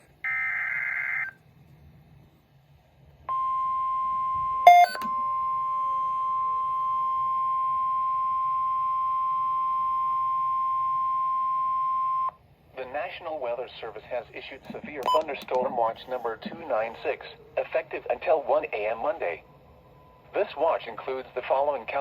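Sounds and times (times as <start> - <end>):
steady single-pitch alert tone: 3.3 - 12.3.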